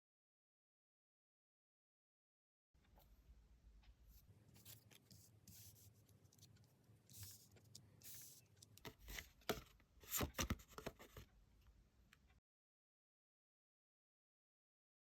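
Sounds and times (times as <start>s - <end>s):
cards rustling: 4.5s - 11.2s.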